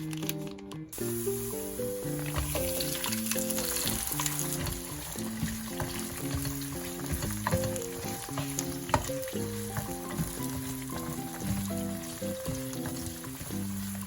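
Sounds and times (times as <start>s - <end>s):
background music simple melody: 0.0s - 14.0s
food sizzling in a pan: 0.9s - 14.0s.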